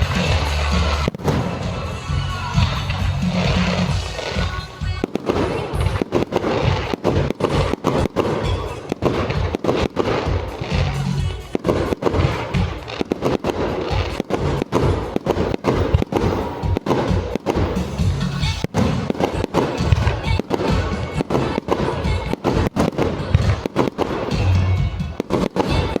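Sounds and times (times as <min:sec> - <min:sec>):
fireworks bangs and cracks: 0:00.0 - 0:26.0
loud music: 0:00.0 - 0:26.0.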